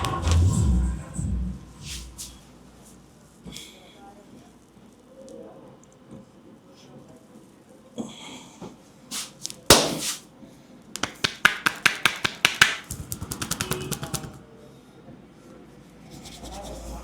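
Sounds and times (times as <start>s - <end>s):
hands slapping: 9.1s - 10.2s, 11.0s - 14.3s
hands tapping and patting: 9.7s - 10.2s, 11.0s - 14.4s.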